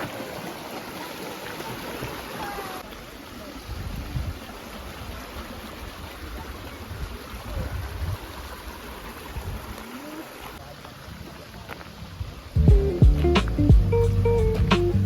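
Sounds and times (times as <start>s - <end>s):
stream water rushing: 0.0s - 15.0s
low rumbles: 12.6s - 15.0s.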